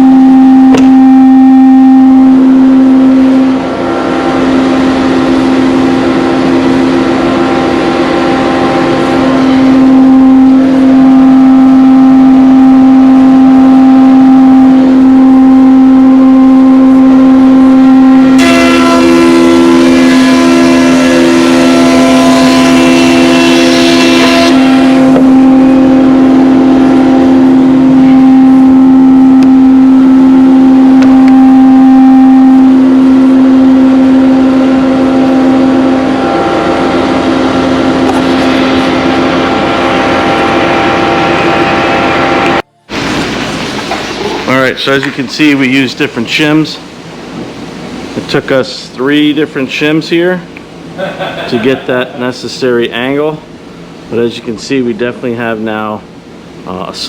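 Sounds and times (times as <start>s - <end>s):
power planer cutting wood: 3.2s - 11.6s, 17.7s - 31.4s, 32.9s - 42.6s.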